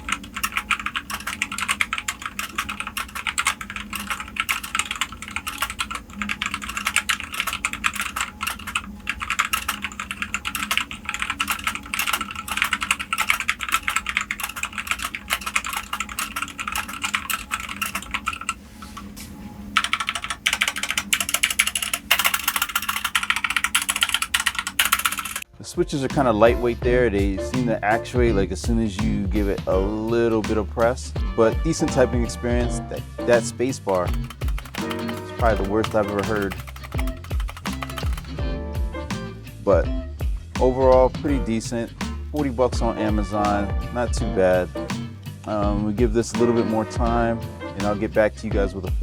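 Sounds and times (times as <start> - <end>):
mechanical keyboard typing: 0.0 - 18.6, 19.8 - 25.4, 33.8 - 38.4.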